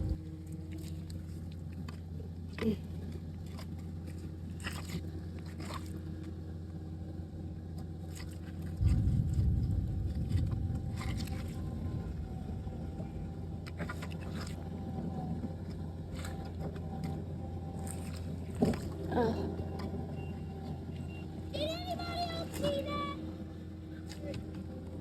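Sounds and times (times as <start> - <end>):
steady low hum: 0.0 - 25.0
low rumble: 8.6 - 20.3.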